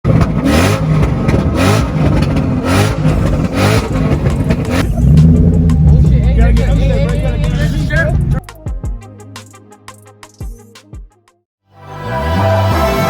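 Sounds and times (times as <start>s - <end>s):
car engine revving loudly: 0.1s - 8.4s.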